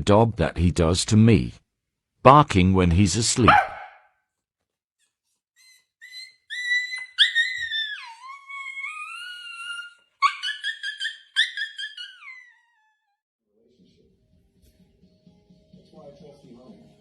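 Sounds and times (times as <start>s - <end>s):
dog yelping: 3.5s - 4.1s, 5.6s - 13.2s
dog whining howl: 6.0s - 13.2s.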